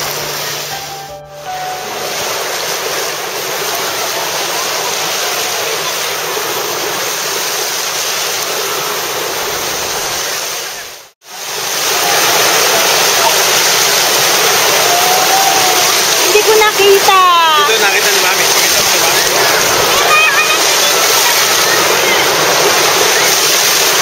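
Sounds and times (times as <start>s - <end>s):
running water rushing: 0.0s - 24.0s.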